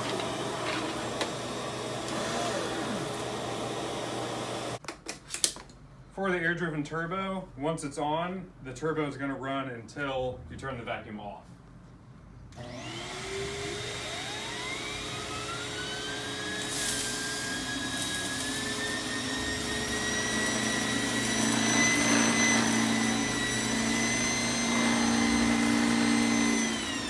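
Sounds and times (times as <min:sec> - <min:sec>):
central vacuum motor whining: 0:00.0 - 0:04.8, 0:12.6 - 0:27.0.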